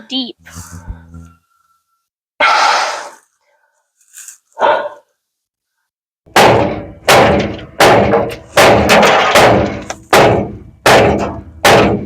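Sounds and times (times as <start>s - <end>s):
hammer striking sheet metal: 6.3s - 12.0s.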